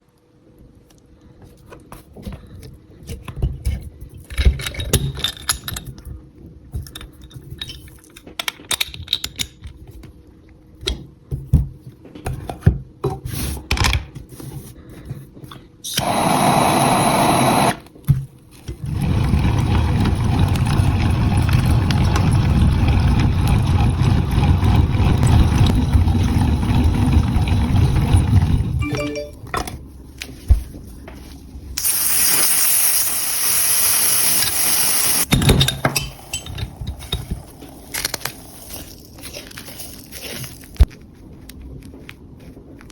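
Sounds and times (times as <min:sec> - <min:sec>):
popcorn maker whirring: 0:15.8 - 0:17.9, 0:18.6 - 0:29.3, 0:31.8 - 0:40.8.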